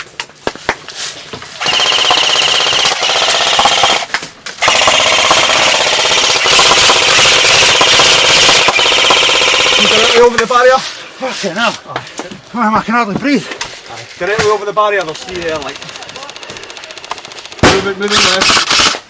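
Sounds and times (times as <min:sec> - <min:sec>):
airsoft guns firing full-auto: 0:01.6 - 0:10.3, 0:15.0 - 0:19.0.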